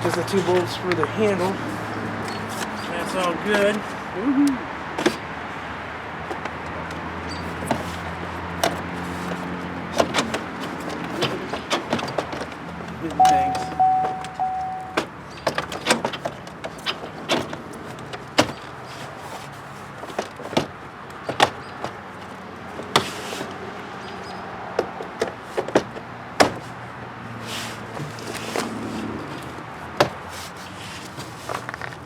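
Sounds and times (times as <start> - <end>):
car door panel clicks and knocks: 24.8 - 26.6.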